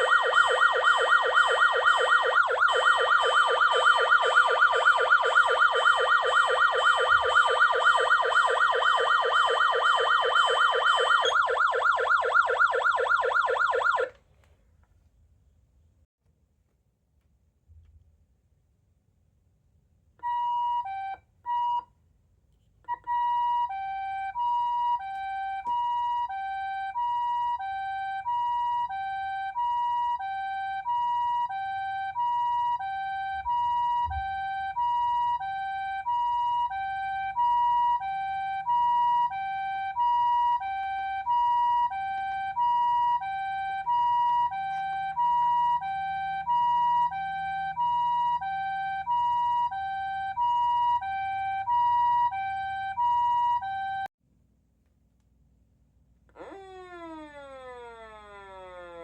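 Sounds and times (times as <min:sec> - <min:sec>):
short siren blips: 0:00.0 - 0:14.1, 0:22.9 - 0:54.1
two-tone ambulance siren: 0:00.0 - 0:14.2, 0:20.2 - 0:21.9, 0:22.9 - 0:54.1, 0:56.4 - 0:59.0.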